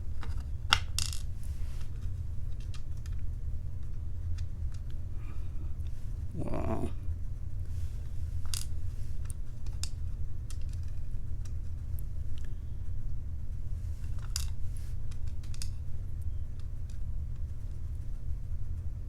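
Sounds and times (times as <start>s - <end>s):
steady low hum: 1.3s - 9.5s.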